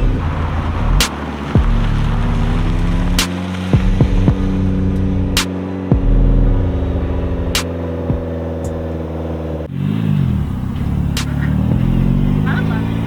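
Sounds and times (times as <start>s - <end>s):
car engine idling with throttle blips: 0.0s - 13.0s
sharp clicks: 7.5s - 9.0s.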